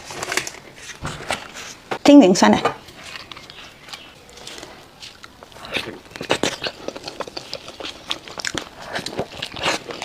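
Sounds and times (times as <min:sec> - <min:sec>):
biting and chewing: 0:02.8 - 0:10.0.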